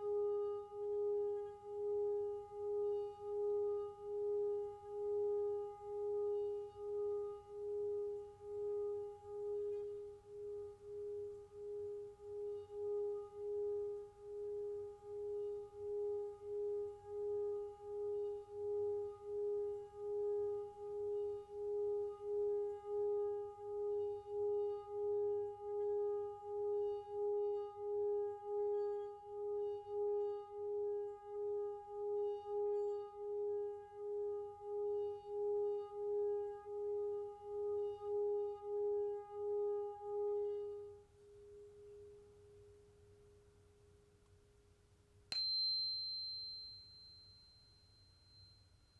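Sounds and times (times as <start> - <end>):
singing bowl low tone: 0.0 - 42.2, 45.3 - 48.9
faint high ringing tones: 45.3 - 48.9
steady higher tone: 45.4 - 48.6.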